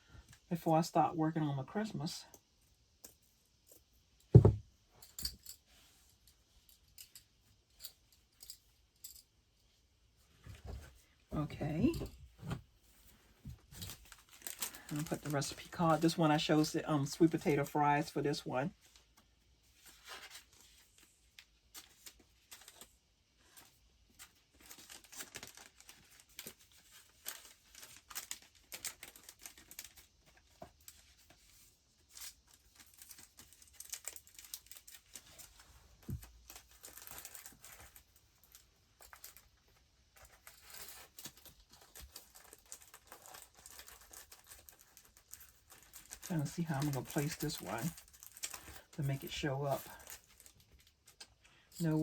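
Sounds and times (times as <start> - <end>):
soft low thump: 4.4 - 4.6
paper rustling and crinkling: 9.6 - 52.0.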